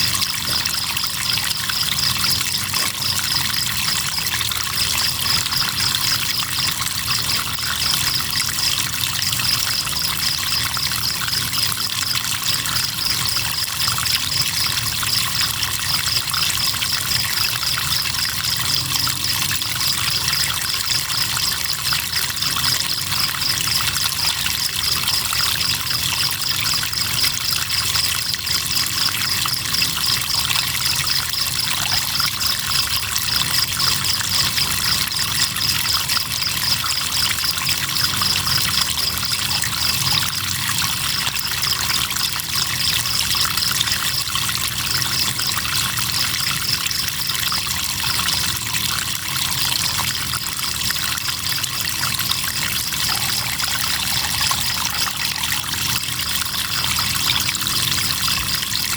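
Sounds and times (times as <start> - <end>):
crickets chirping: 0.0 - 58.9
river water flowing: 50.4 - 58.9.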